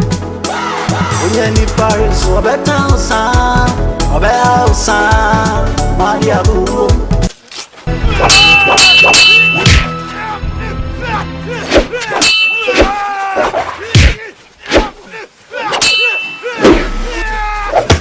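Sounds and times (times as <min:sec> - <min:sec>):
afrobeat instrumental music: 0:00.0 - 0:07.3.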